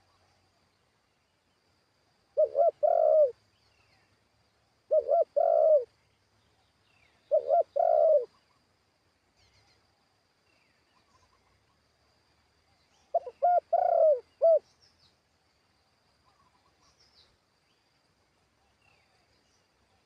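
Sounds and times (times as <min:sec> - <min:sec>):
dove cooing: 0:02.4 - 0:03.4, 0:04.9 - 0:05.9, 0:07.3 - 0:08.4, 0:13.1 - 0:14.6.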